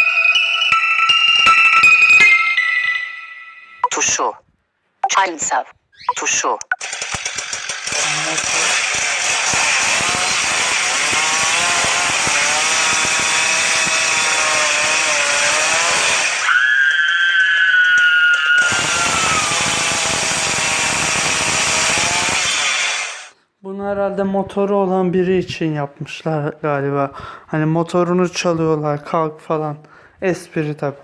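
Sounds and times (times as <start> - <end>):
chainsaw revving: 6.7 - 16.6, 18.4 - 23.4
person screaming: 16.4 - 19.6.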